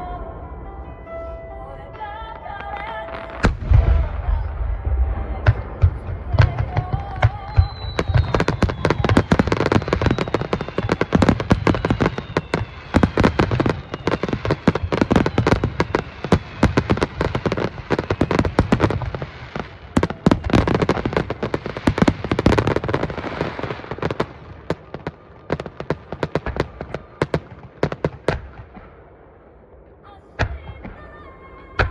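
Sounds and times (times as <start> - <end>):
firework shell bursts and crackle: 5.4 - 29.0
falling firework whistle: 6.4 - 28.6.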